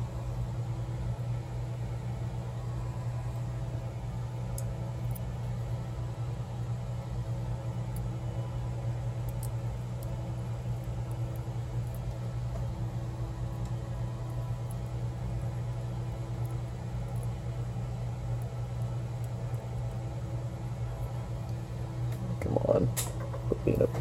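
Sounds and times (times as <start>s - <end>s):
low mechanical hum: 0.0s - 24.0s.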